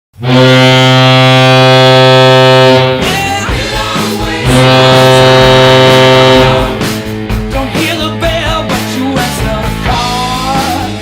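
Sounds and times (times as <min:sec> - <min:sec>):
deep air horn blasts: 0:00.2 - 0:03.5, 0:04.4 - 0:07.1.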